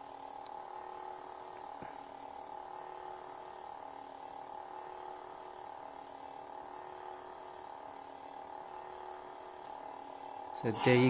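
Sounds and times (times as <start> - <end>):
electronic hum: 0.0 - 11.0.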